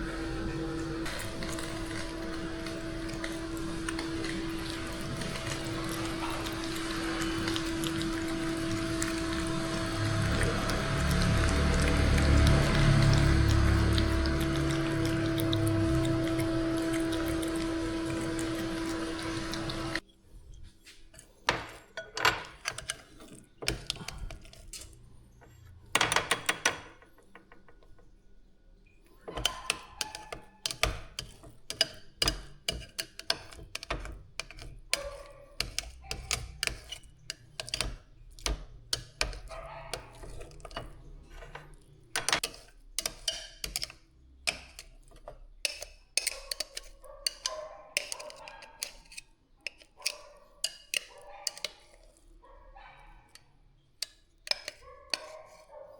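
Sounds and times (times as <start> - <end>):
hard objects clicking and knocking: 21.5 - 28.2, 29.1 - 52.1.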